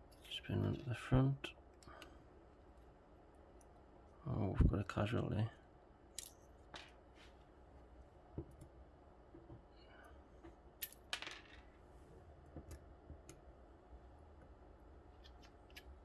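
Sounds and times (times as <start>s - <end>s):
metallic clicks of lock parts: 15.2s - 15.9s.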